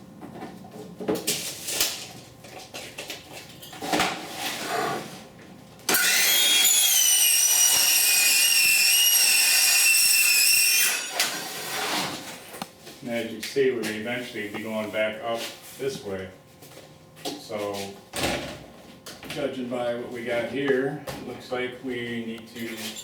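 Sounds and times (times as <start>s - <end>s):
power saw whining: 5.9s - 12.0s.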